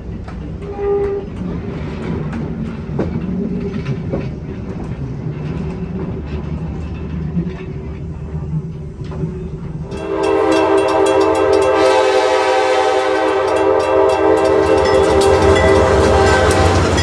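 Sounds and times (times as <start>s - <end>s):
moving train rumble and clicking: 0.0s - 17.0s
steam locomotive whistle: 9.9s - 17.0s.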